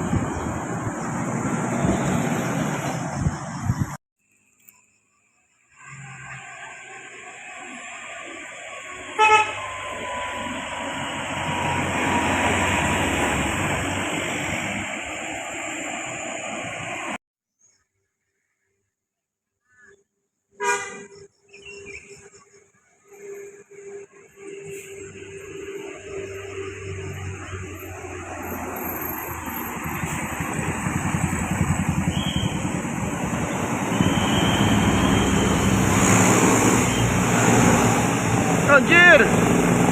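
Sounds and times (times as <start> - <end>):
bus passing by: 0.0 - 4.0, 5.8 - 17.2, 22.6 - 39.9
road noise: 0.0 - 4.0, 5.6 - 17.2, 20.5 - 39.9
bus horn blast: 9.1 - 9.8, 20.6 - 21.2, 33.5 - 37.4.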